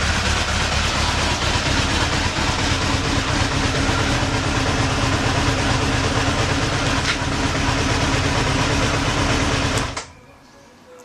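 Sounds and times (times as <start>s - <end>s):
motorcycle engine running: 0.0s - 10.1s.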